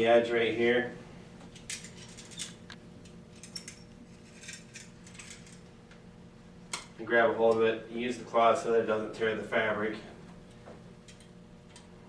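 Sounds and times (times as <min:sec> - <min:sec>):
faint steady hum: 0:00.0 - 0:12.0.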